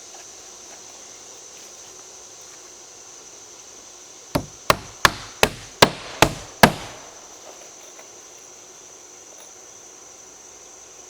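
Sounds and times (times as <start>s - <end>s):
hammer striking nail into wood: 4.4s - 7.2s.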